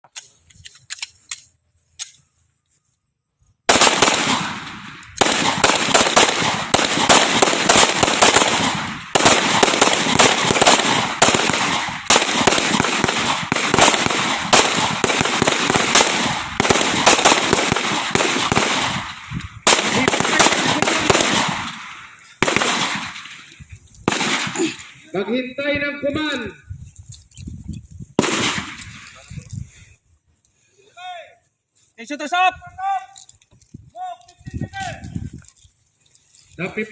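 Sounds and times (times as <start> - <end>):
pistols firing rapidly: 3.7 - 25.0, 28.2 - 28.8.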